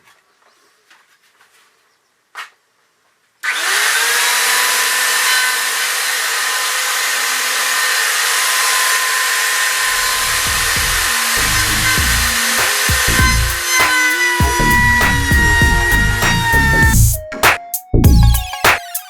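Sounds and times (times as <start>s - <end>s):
electric power tool motor running: 3.4s - 17.0s.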